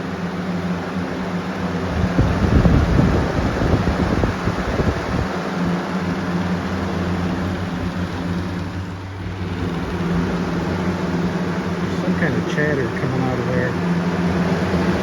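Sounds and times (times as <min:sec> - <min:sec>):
box fan running: 0:00.0 - 0:15.0
fan blade rubbing chatter: 0:00.0 - 0:15.0.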